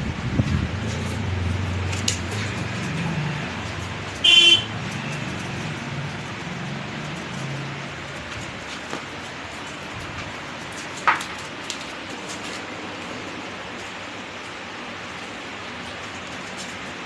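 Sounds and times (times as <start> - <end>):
traffic rumble: 0.0 - 17.0
vehicle horn toot: 4.2 - 4.8.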